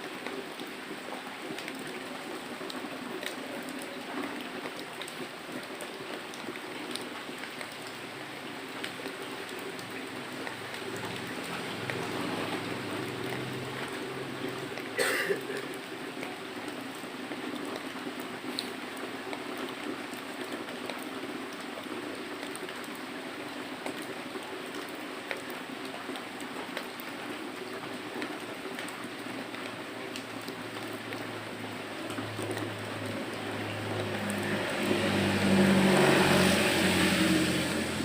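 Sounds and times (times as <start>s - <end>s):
steady rain: 0.0s - 38.0s
raindrop ticks: 4.6s - 23.0s.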